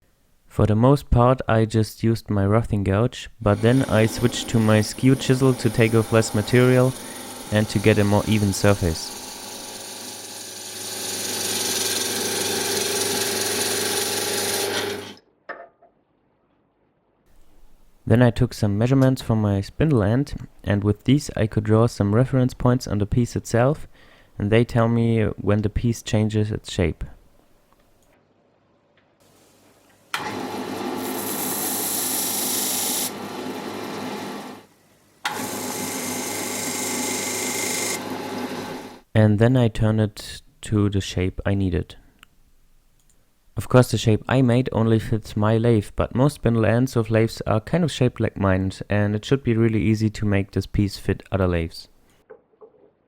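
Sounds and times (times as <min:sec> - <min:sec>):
chisel cutting hiss: 0:03.6 - 0:15.0, 0:30.9 - 0:33.2
lathe motor hum: 0:03.6 - 0:15.2, 0:30.2 - 0:39.0.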